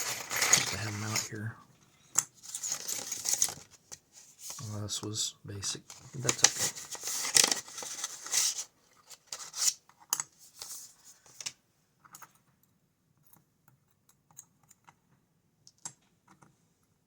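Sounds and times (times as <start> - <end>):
rustling and scraping on desk: 0.0 - 1.4, 2.4 - 4.8, 5.9 - 11.6.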